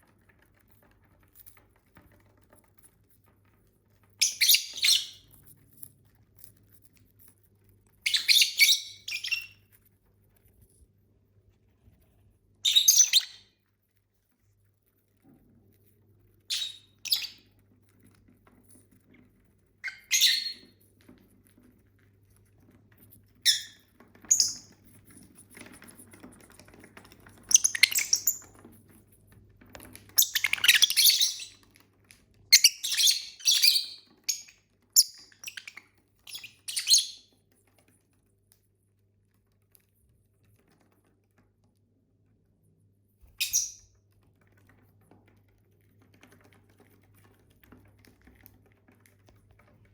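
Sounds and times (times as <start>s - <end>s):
lovebirds chirping: 4.2s - 5.3s, 8.1s - 9.6s, 12.6s - 13.5s, 16.5s - 17.5s, 19.8s - 20.7s, 23.4s - 24.8s, 27.4s - 28.6s, 30.1s - 31.7s, 32.5s - 37.3s, 43.3s - 43.8s.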